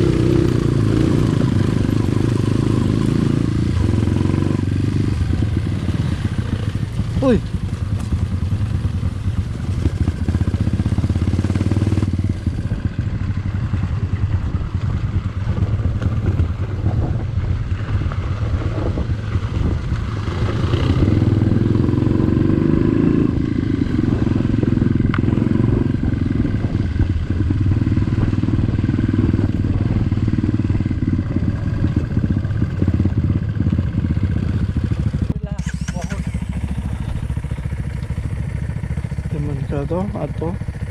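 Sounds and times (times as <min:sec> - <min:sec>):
motorcycle engine running: 0:00.0 - 0:40.9.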